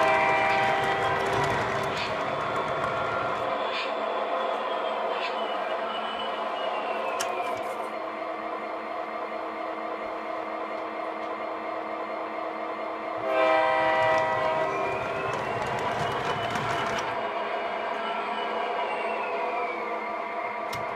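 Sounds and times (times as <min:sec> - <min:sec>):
multi-note horn blast: 0:13.2 - 0:14.5.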